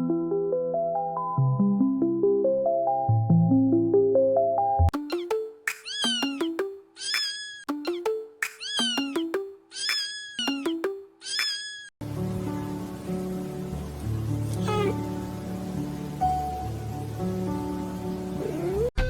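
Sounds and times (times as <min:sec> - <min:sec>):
cat meowing: 0:05.8 - 0:06.4, 0:08.6 - 0:10.6, 0:14.6 - 0:15.0
background music: 0:12.0 - 0:19.0.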